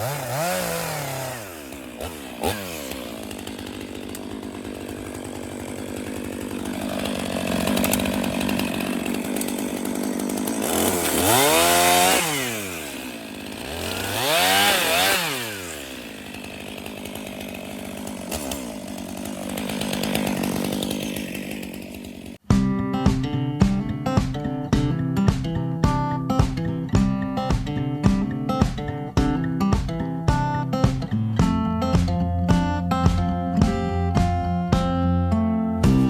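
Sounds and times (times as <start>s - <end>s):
chainsaw revving: 0.0s - 22.4s.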